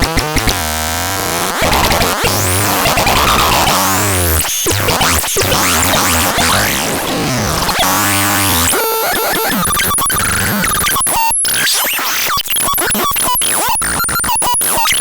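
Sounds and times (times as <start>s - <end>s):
glitchy electronic toy sounds: 0.0s - 15.0s
stuttering beeps: 1.7s - 10.1s.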